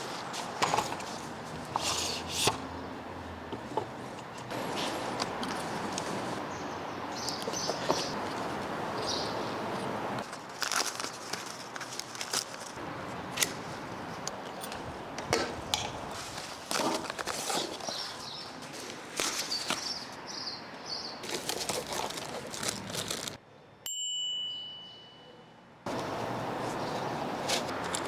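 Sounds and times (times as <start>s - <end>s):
rustling with clicks and knocks: 21.2s - 23.4s
sharp metallic ding: 23.9s - 25.5s.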